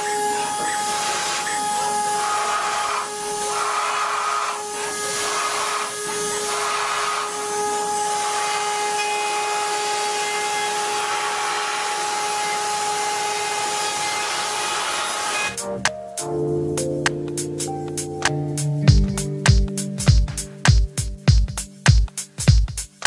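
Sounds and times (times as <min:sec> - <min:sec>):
electric motor whining: 0:00.0 - 0:15.6
loud hiss: 0:00.0 - 0:15.6
machine working noise surges: 0:00.0 - 0:15.6.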